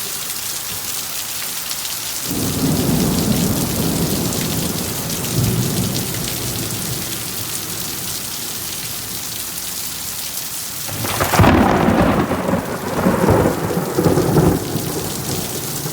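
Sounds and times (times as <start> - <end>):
steady rain falling: 0.0 - 15.9
thunder rolling: 2.3 - 8.1, 10.9 - 15.9.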